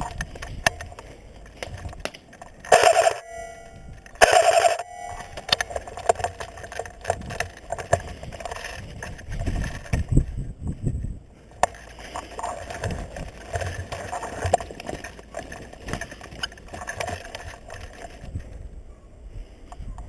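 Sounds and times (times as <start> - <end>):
sharp clicks: 0.0 - 10.0
gearbox whine: 0.0 - 18.5
electric rifle bursts: 2.7 - 3.3.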